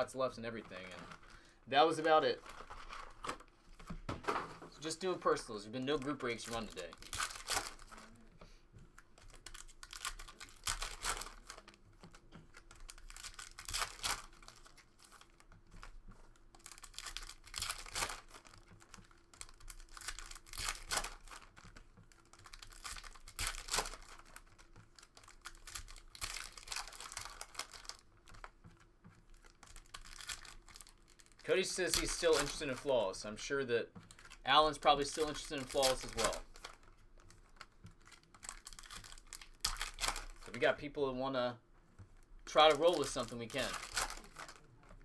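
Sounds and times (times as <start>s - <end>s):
cards being handled: 0.0s - 1.3s, 8.8s - 32.9s, 34.0s - 40.7s, 42.0s - 45.0s
foil wrappers crinkling and tearing: 4.8s - 8.3s, 9.0s - 33.0s, 34.0s - 40.7s, 42.5s - 45.0s.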